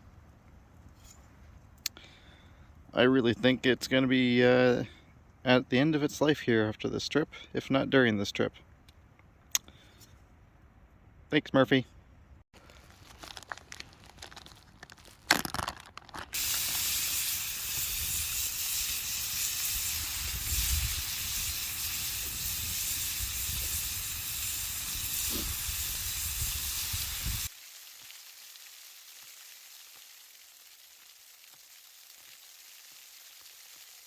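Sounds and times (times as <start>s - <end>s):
camp stove burner hissing: 16.4s - 34.0s.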